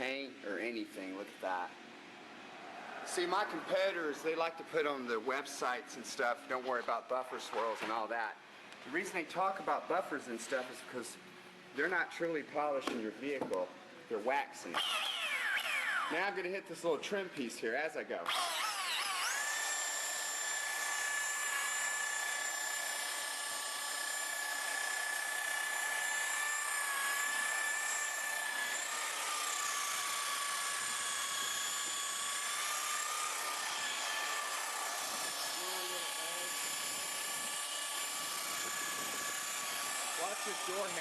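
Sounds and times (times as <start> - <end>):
electric polisher whining: 14.8 - 16.2, 18.3 - 41.0.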